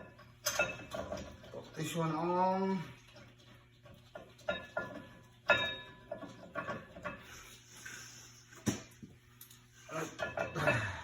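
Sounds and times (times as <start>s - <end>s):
metal clinks and knocks: 0.0s - 1.6s, 3.9s - 7.3s.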